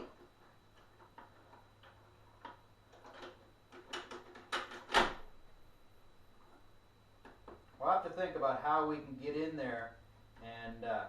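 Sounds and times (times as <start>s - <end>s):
plastic parts clicking and knocking: 0.0s - 5.1s.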